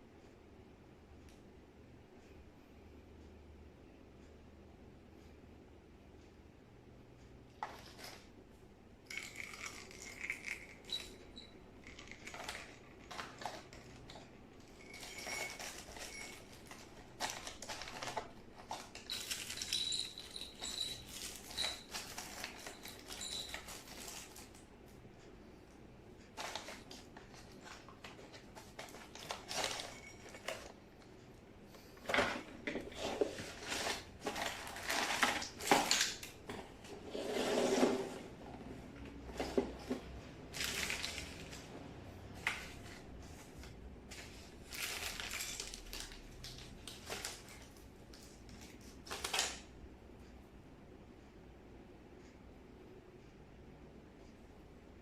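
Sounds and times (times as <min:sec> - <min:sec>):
objects being handled: 0:07.6 - 0:08.3, 0:09.1 - 0:24.6, 0:26.3 - 0:49.6.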